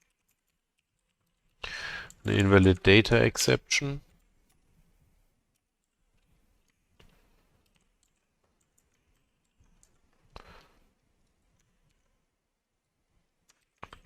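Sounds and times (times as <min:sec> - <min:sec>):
faint keyboard keystrokes: 0:00.0 - 0:03.0, 0:05.5 - 0:12.2, 0:13.4 - 0:14.0.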